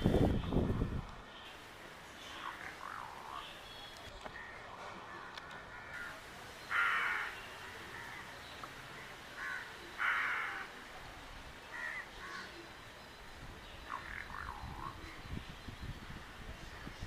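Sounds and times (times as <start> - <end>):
crow cawing: 6.7 - 8.2, 9.4 - 10.7.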